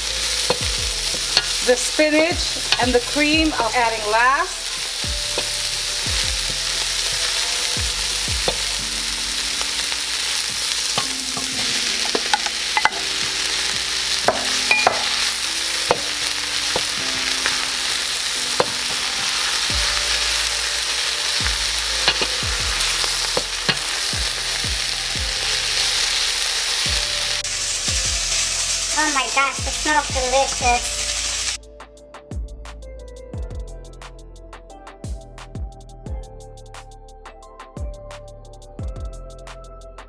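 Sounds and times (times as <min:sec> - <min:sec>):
vegetables sizzling in a pot: 0:00.0 - 0:31.6
spoon stirring and knocking pot: 0:10.6 - 0:15.3.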